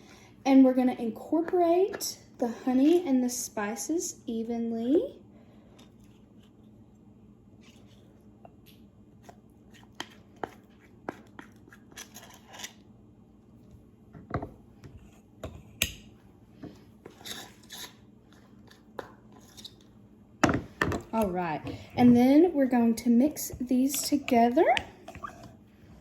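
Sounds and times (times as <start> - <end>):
utensil scraping a bowl: 17.0 - 18.0, 23.4 - 26.0.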